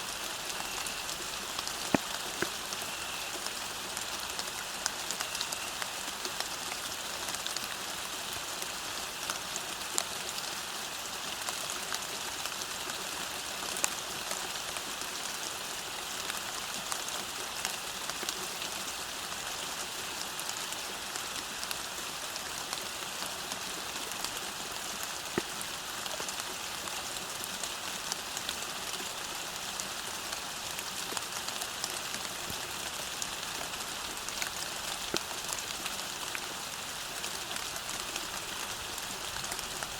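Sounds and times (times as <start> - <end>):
rain falling on a road: 0.0 - 39.9.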